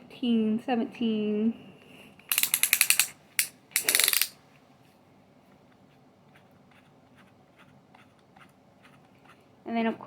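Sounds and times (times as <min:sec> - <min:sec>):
drill clutch collar clicking: 0:02.3 - 0:04.3.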